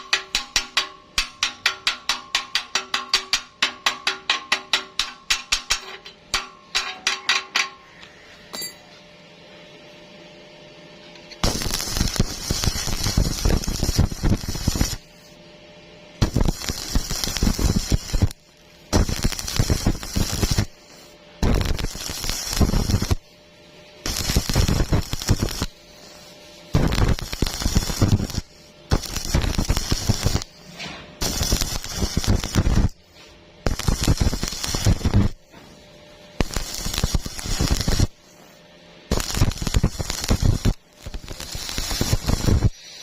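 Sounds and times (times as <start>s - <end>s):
welding arc crackling: 11.2s - 15.4s, 16.2s - 43.0s.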